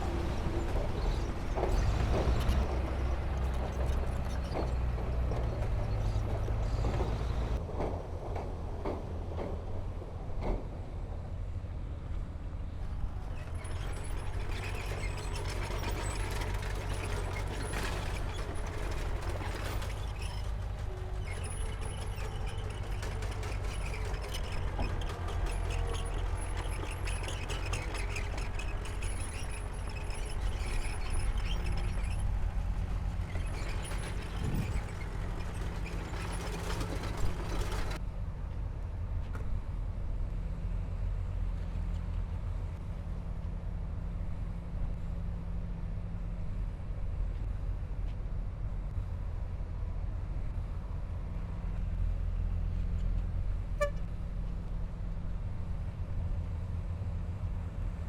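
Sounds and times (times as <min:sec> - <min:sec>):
diesel engine rumble: 0:00.0 - 0:58.0
metal and rock clattering and scraping: 0:00.1 - 0:07.4, 0:13.2 - 0:38.0.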